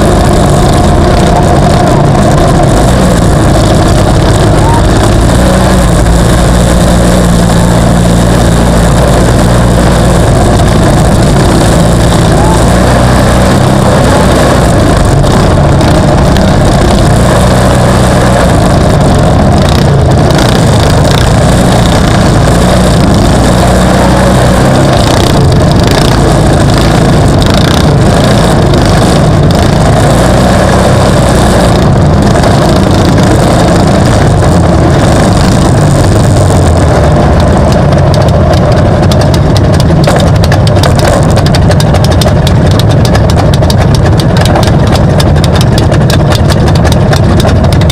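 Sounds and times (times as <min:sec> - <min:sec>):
racing vehicle engines running: 0:00.0 - 0:47.9.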